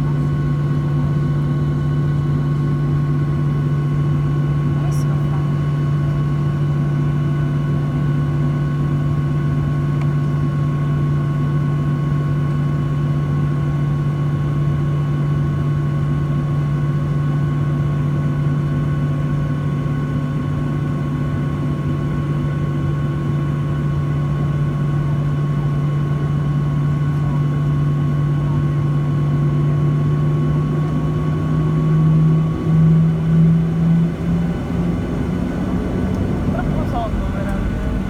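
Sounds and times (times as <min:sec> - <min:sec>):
jet engine drone in cabin: 0:00.0 - 0:38.0
rushing noise: 0:34.8 - 0:38.0.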